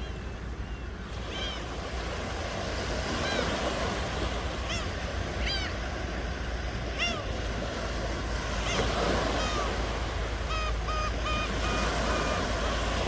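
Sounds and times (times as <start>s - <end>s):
ocean surf washing: 0.0s - 13.0s
short down-arching bird calls: 8.5s - 13.0s.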